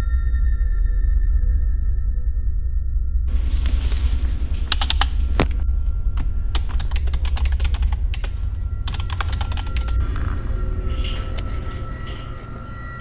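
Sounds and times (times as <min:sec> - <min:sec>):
low rumble: 0:00.5 - 0:13.0
rapid irregular clicks: 0:03.3 - 0:13.0.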